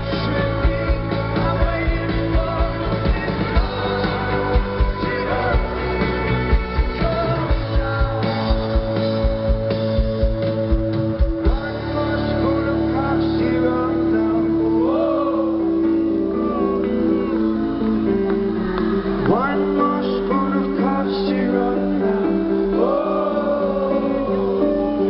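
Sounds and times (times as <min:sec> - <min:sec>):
drums: 0:00.0 - 0:14.6
bass: 0:00.0 - 0:25.0
electric guitars: 0:00.0 - 0:25.0
person singing: 0:00.0 - 0:25.0.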